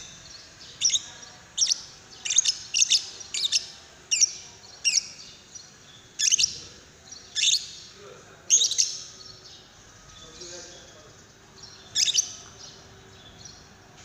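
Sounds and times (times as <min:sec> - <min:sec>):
bird high-pitched chirps: 0:00.0 - 0:09.4, 0:11.6 - 0:13.7.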